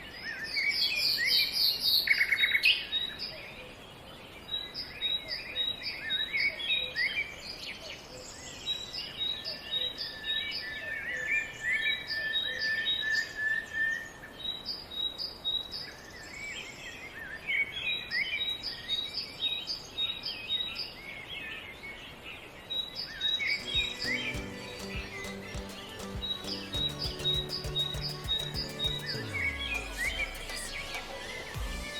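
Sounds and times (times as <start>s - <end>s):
birds chirping and singing: 23.3s - 31.9s.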